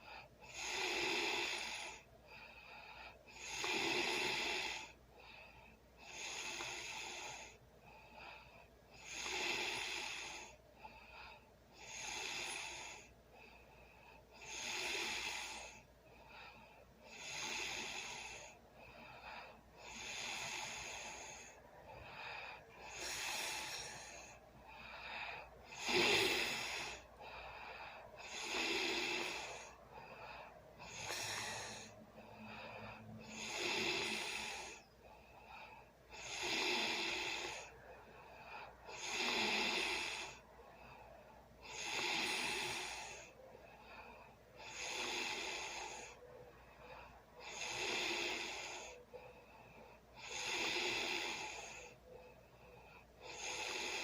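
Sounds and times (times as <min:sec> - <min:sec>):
person snoring: 0:00.0 - 0:02.1, 0:03.3 - 0:05.0, 0:06.0 - 0:07.6, 0:09.0 - 0:10.6, 0:11.7 - 0:13.1, 0:14.3 - 0:15.8, 0:17.0 - 0:19.0, 0:19.8 - 0:34.9, 0:36.1 - 0:37.8, 0:38.6 - 0:40.4, 0:41.6 - 0:43.4, 0:44.6 - 0:46.2, 0:47.4 - 0:49.1, 0:50.2 - 0:52.0, 0:53.2 - 0:54.0.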